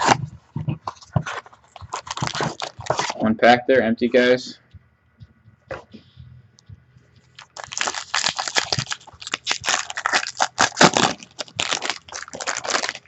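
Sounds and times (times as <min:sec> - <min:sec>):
plastic packaging crinkling: 0:00.9 - 0:03.2, 0:07.4 - 0:13.0.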